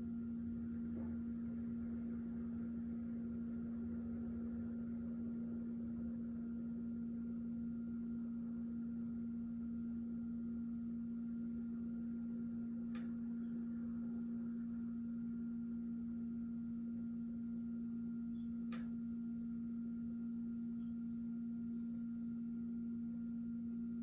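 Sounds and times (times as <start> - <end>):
low electrical hum: 0.0 - 24.0
faint clicks: 12.9 - 13.2, 18.7 - 18.9.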